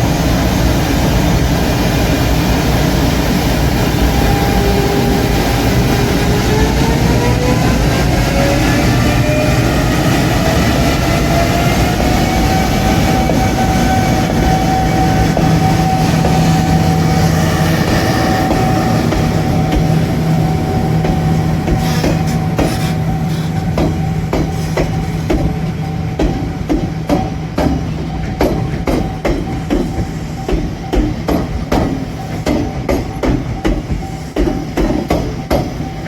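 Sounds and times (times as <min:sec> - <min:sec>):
train rolling slowly: 0:00.0 - 0:36.0
wheels clacking over rail joints: 0:08.8 - 0:36.0.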